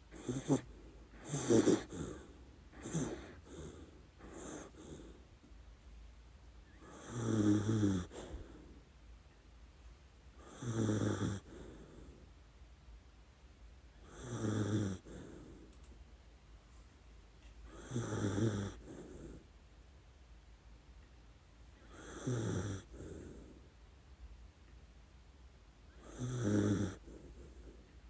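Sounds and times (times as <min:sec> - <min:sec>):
dog snoring: 0:00.1 - 0:05.2, 0:06.7 - 0:08.8, 0:10.4 - 0:12.2, 0:14.0 - 0:15.7, 0:17.6 - 0:19.5, 0:21.8 - 0:23.7, 0:25.9 - 0:27.9.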